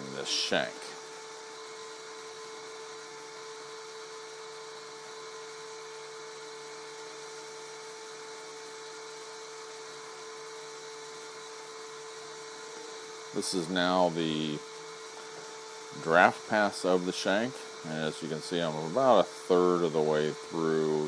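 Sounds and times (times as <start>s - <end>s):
mill spindle whining: 0.0s - 21.0s.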